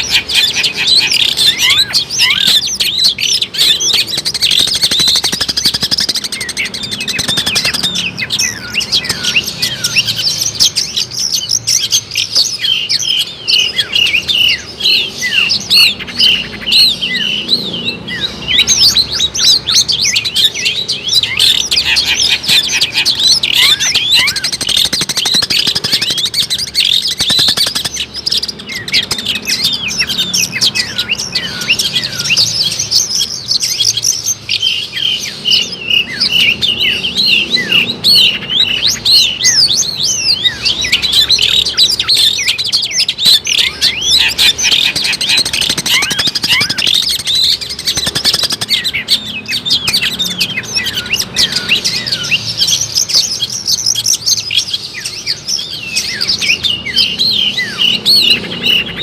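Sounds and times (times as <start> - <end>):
bird singing: 0.0 - 59.0.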